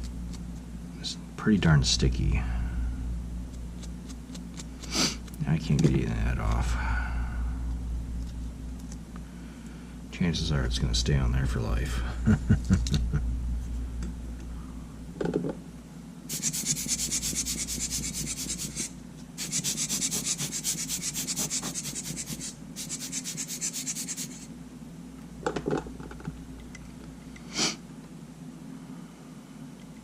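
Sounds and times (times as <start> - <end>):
rhythmic rubbing strokes: 16.3 - 24.5.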